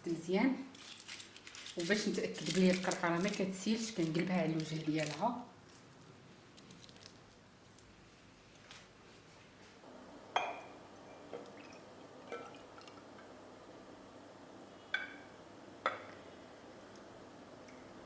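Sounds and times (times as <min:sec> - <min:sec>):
glass bottles clinking: 0:10.4 - 0:10.7.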